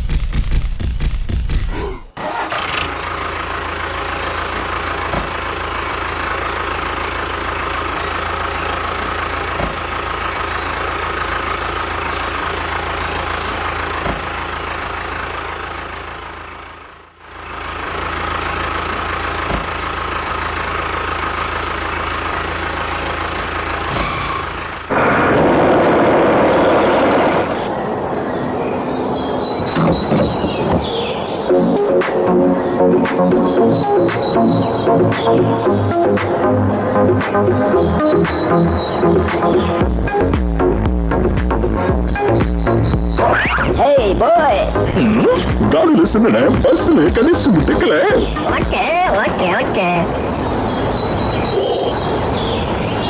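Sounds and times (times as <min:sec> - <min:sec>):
rough loud noise: 0:23.9 - 0:28.1.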